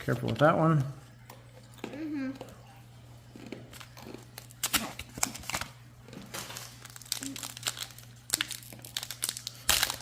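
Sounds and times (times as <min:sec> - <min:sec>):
foil wrappers crinkling: 0:03.6 - 0:10.0.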